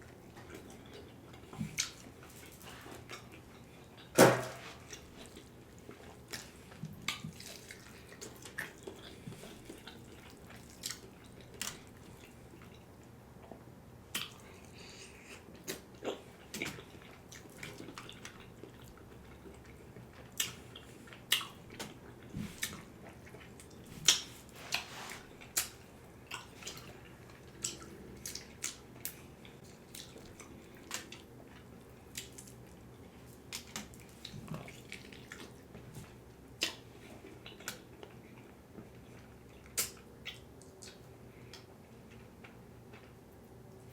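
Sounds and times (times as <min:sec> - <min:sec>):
wet chewing: 0:04.7 - 0:35.9.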